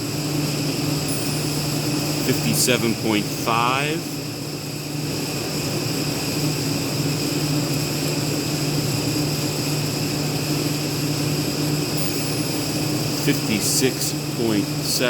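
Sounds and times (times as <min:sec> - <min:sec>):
high whine: 0:00.0 - 0:05.4, 0:11.9 - 0:15.0
pump low hum: 0:00.0 - 0:09.5.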